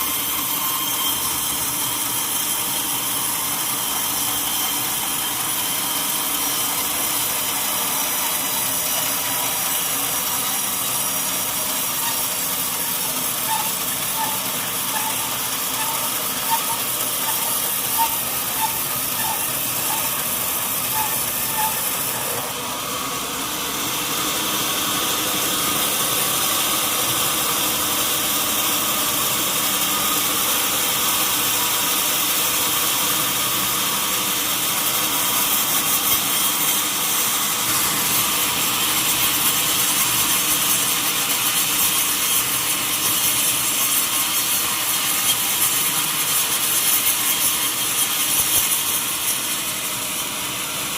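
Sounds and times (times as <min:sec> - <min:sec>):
sawmill saw cutting log: 0:00.0 - 0:50.9.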